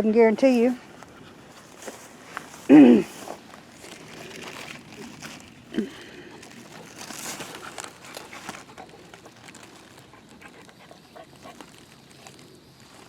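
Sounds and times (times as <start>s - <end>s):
light rustling and ticks: 0.1s - 13.0s
dog panting: 6.3s - 11.9s.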